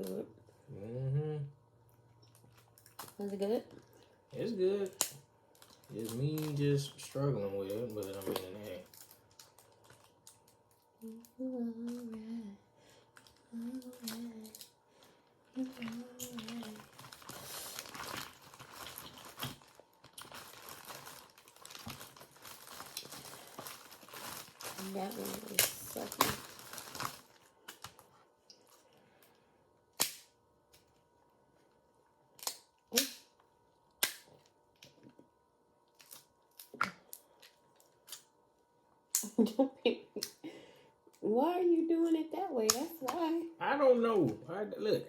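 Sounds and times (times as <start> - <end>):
crab shells cracking: 4.8 - 6.8, 32.3 - 33.2.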